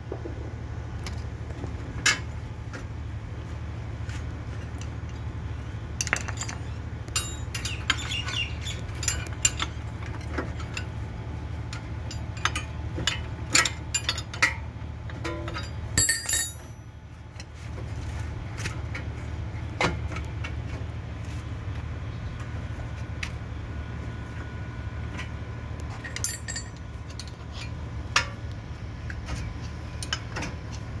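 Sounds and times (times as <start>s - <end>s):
steady low hum: 0.0s - 31.0s
metal tools clinking and knocking: 6.0s - 11.0s, 12.0s - 16.9s, 25.9s - 27.8s.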